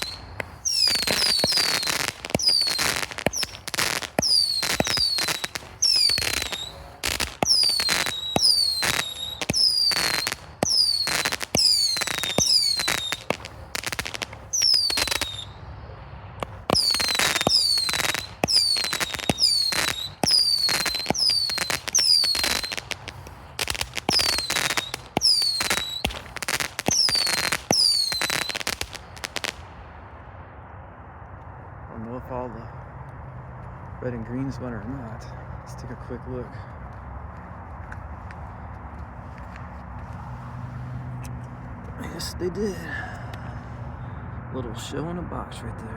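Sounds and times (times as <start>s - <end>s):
falling firework whistle: 0.0s - 15.6s, 16.4s - 29.6s
firework crackle: 0.0s - 15.6s, 16.4s - 29.8s
firework shots firing: 0.0s - 15.6s, 16.4s - 29.8s.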